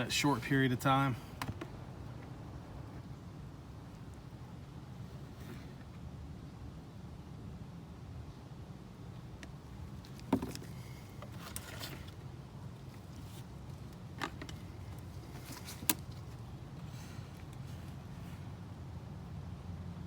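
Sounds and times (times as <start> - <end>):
rustling handling noises: 9.6 - 18.6.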